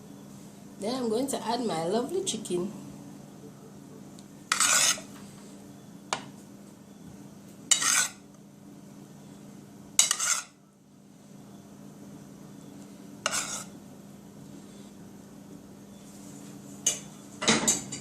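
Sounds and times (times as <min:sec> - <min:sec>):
utensil scraping and clinking on dish: 0:04.5 - 0:05.1, 0:07.7 - 0:08.2, 0:10.0 - 0:10.6, 0:13.2 - 0:13.7.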